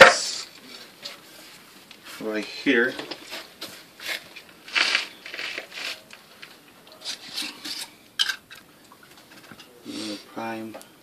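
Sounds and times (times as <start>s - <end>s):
scraping and rubbing on can: 3.2s - 6.1s.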